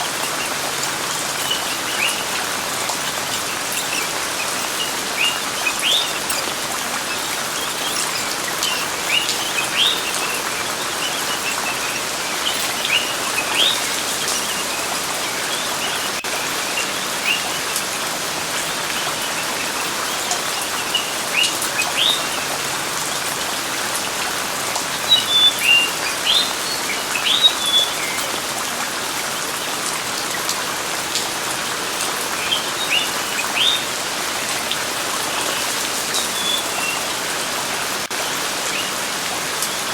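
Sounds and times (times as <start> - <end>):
birds chirping: 0.0 - 39.9
steady rain: 0.0 - 39.9.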